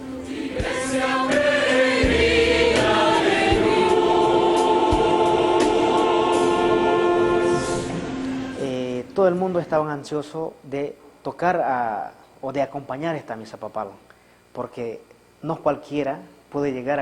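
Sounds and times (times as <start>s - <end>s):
choir singing held chords: 0.0s - 9.0s.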